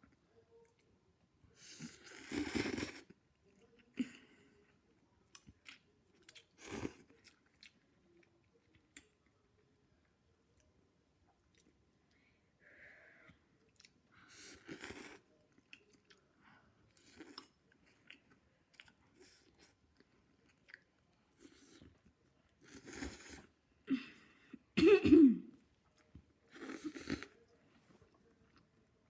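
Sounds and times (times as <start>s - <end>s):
loud cough: 24.8s - 25.5s.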